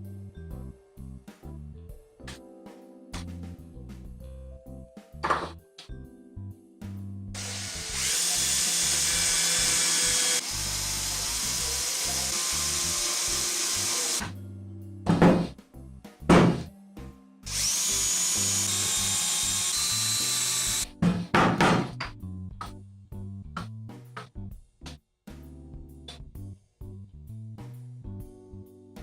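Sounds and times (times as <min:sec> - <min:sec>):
background music: 0:00.0 - 0:29.0
electric power tool running: 0:07.4 - 0:14.3, 0:17.5 - 0:20.9.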